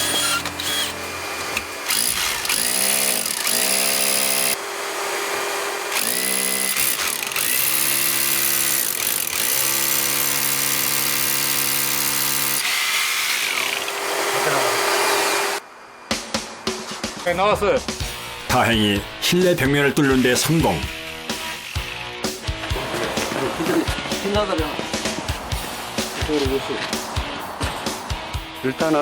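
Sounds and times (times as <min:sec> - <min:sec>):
electric drill boring through wall: 0:00.0 - 0:15.6, 0:20.9 - 0:23.7.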